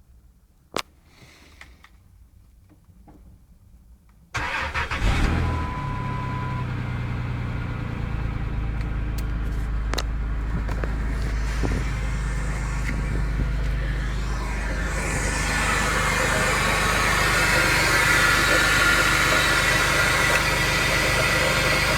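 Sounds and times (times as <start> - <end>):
car engine cranking and idling: 4.4 - 21.9
short steady whine: 4.4 - 21.9.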